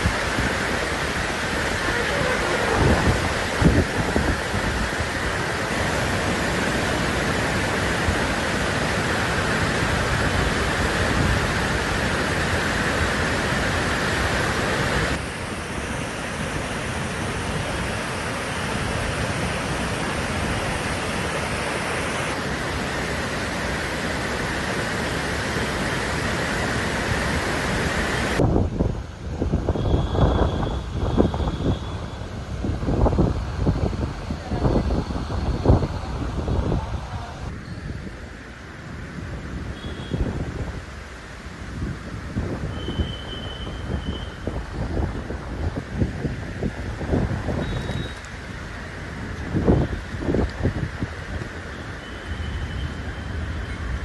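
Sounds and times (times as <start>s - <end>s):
running water: 0.0s - 28.4s
heavy rain: 0.0s - 54.0s.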